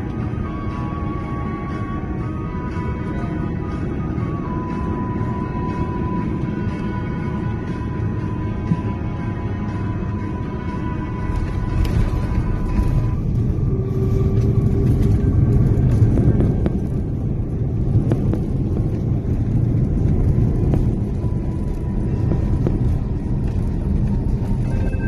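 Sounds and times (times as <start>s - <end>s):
airliner rumble: 0.0s - 25.0s.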